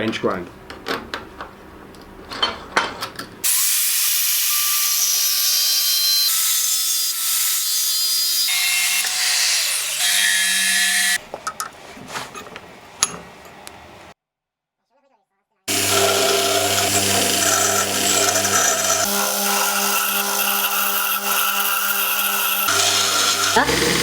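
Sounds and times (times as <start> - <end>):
power grinder grinding steel: 3.4 - 11.2, 15.7 - 24.0.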